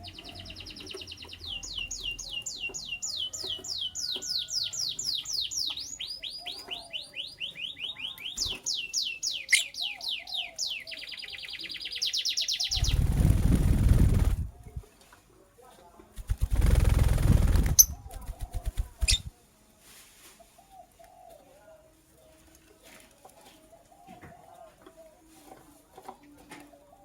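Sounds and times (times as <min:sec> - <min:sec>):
lovebird chirping: 0:00.0 - 0:14.8, 0:17.2 - 0:19.3.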